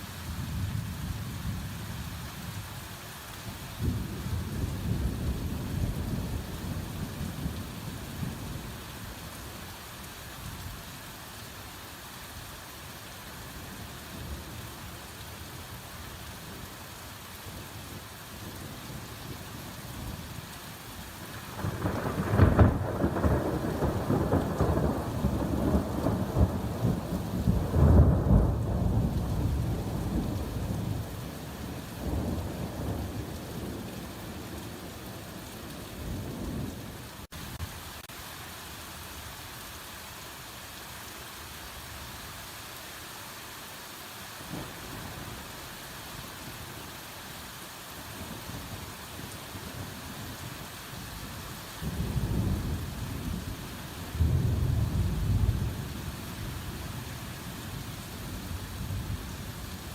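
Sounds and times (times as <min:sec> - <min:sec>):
hard rain falling: 0:00.0 - 0:59.9
thunder rumbling: 0:21.2 - 0:35.0, 0:54.2 - 0:55.9.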